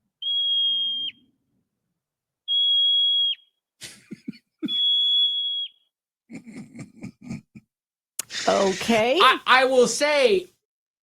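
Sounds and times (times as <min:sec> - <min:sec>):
marmot whistling: 0:00.2 - 0:01.3, 0:02.5 - 0:03.6, 0:04.6 - 0:05.9.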